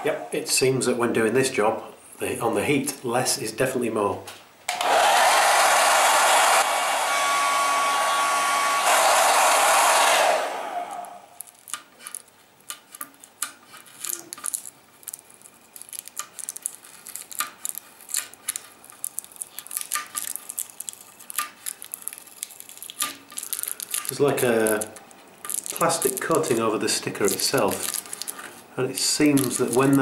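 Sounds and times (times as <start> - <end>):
hair dryer blowing: 4.7 - 11.3
sticker peeling crackles: 11.4 - 30.0.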